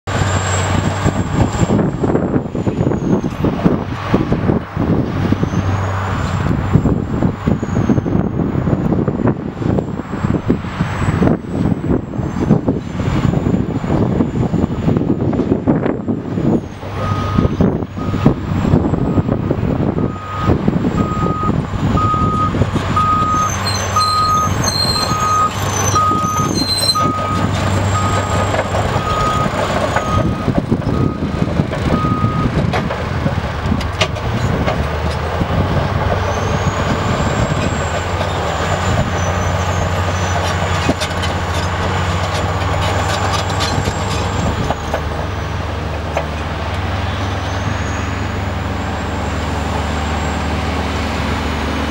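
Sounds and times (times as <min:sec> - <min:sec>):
bulldozer diesel engine under load: 0:00.0 - 0:51.9
tracks clanking: 0:00.1 - 0:51.9
reversing alarm beeping: 0:17.0 - 0:18.4, 0:20.0 - 0:32.5.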